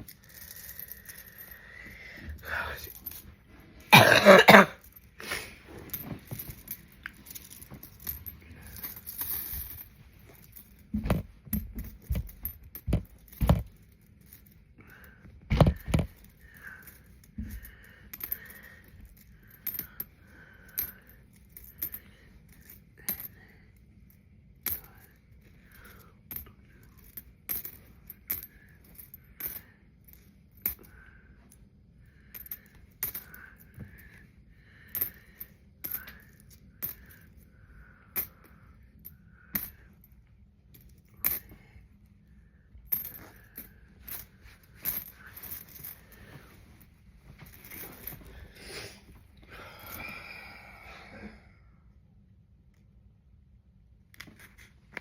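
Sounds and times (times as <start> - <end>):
person coughing: 3.9 - 5.6.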